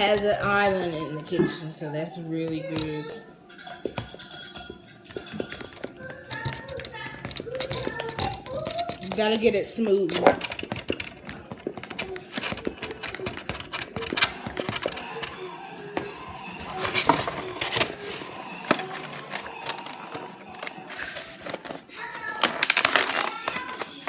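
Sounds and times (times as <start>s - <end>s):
spoon stirring batter in bowl: 4.4s - 21.9s.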